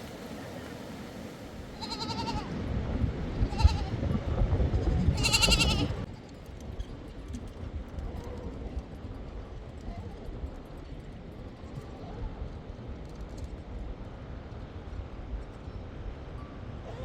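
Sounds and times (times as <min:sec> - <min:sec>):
young sheep or goat bleating: 0:01.8 - 0:02.6, 0:03.4 - 0:04.0, 0:05.1 - 0:06.0.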